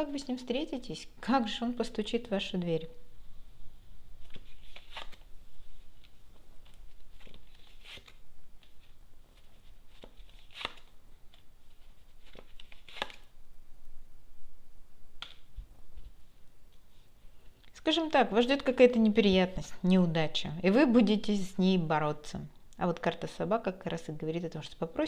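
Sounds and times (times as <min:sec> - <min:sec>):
cards being shuffled: 0:04.2 - 0:05.3, 0:05.9 - 0:13.3.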